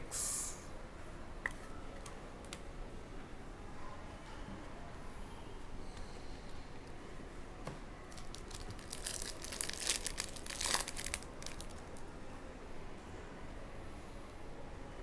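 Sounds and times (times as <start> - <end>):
foil wrapper tearing and crinkling: 8.1 - 12.0.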